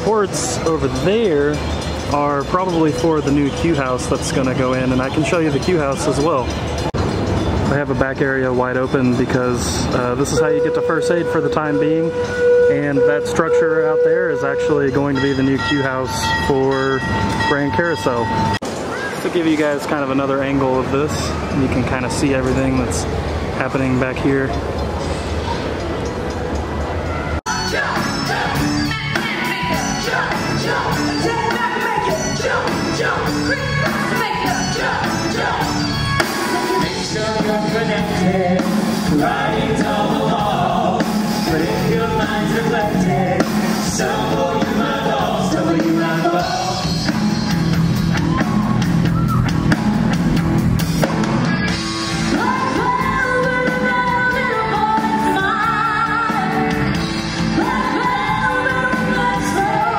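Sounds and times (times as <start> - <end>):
people singing: 27.5 - 47.0, 57.6 - 59.9
amplified pop-rock music: 27.5 - 59.9
crowd shouts and whoops: 48.0 - 50.1.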